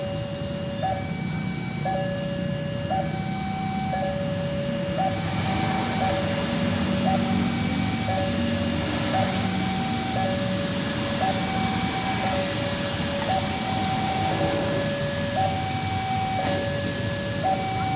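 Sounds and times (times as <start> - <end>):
two-tone warning siren: 0.0 - 17.9.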